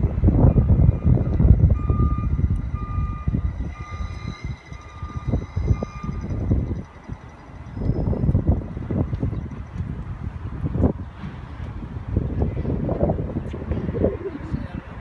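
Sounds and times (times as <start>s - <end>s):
wind buffeting microphone: 0.0s - 15.0s
short electronic beeps: 0.5s - 8.3s.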